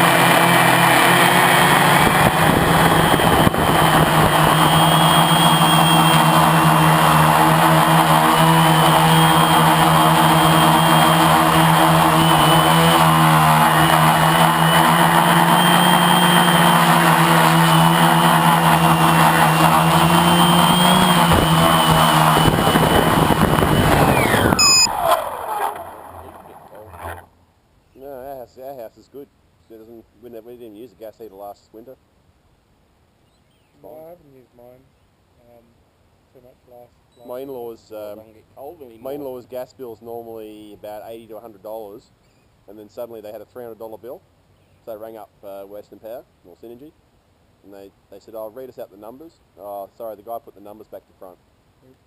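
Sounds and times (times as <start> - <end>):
drone motors buzzing: 0.0 - 27.3
high whine: 0.0 - 27.3.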